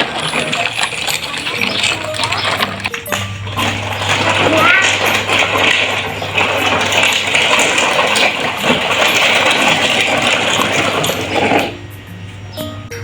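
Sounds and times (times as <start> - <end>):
toy vehicles clattering together: 0.0 - 12.5.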